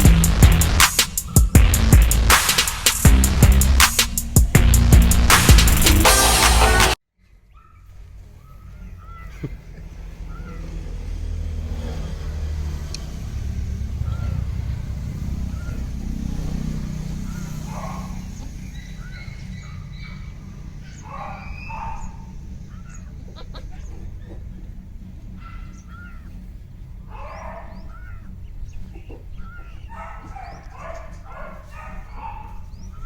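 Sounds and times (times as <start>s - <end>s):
loud bird calls: 0.0s - 6.0s, 7.2s - 33.0s
small birds chirping: 0.0s - 6.1s, 7.2s - 33.0s
low rumble: 1.5s - 2.4s, 3.0s - 6.9s, 13.2s - 16.6s.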